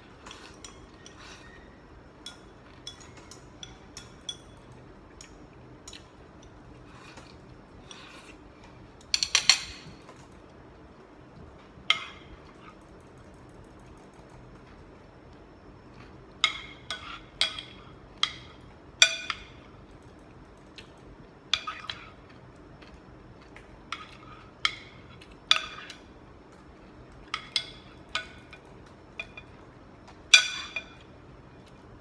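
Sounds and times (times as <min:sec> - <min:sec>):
cutlery clinking against dishes: 0:02.2 - 0:06.1, 0:09.0 - 0:10.3.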